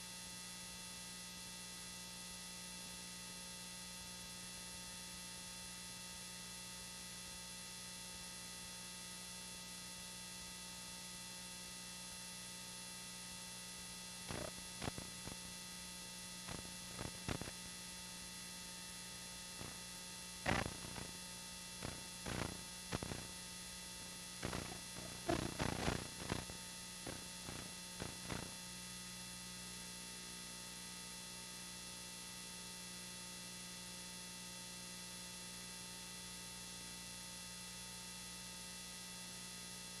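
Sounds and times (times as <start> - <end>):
electrical hum: 13.3 - 29.8.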